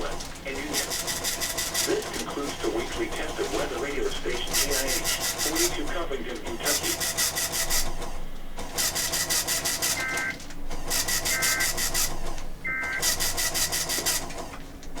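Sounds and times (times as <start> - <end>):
pulsing radio static: 1.8 - 7.2, 9.8 - 10.4, 11.1 - 12.1, 12.7 - 13.2
two-tone digital chirps: 9.9 - 10.4, 11.2 - 12.0, 12.7 - 13.2.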